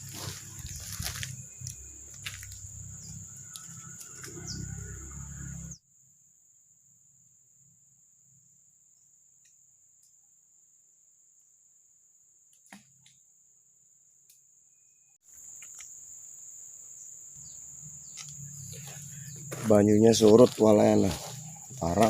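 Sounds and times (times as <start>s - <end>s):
high-pitched insect drone: 0.0s - 5.9s, 14.7s - 22.0s.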